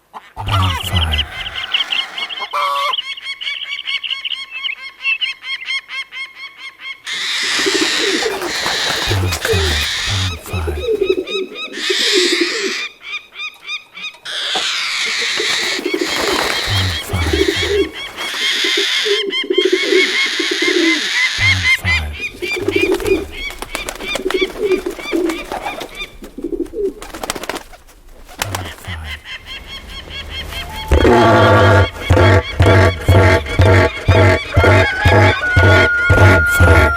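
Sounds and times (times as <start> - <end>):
pigeons cooing: 0.4 - 3.9, 7.1 - 13.2, 14.2 - 36.9
high bird chirps: 0.7 - 4.8.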